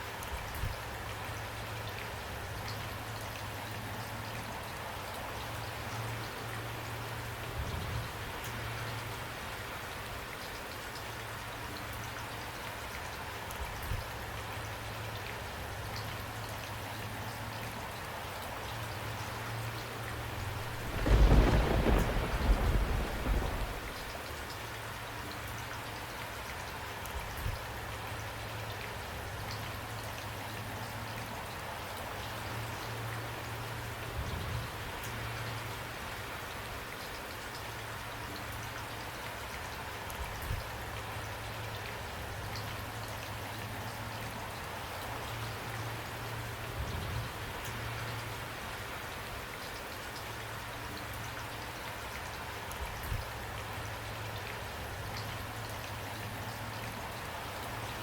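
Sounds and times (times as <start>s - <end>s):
steady rain: 0.0s - 58.0s
thunder rolling: 20.2s - 24.3s.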